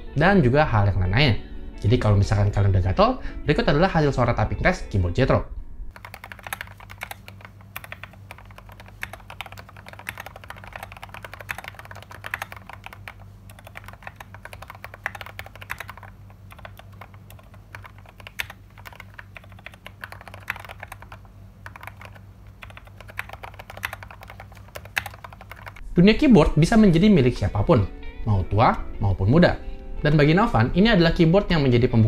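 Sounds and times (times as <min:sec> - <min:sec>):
mechanical keyboard typing: 0:05.9 - 0:25.8.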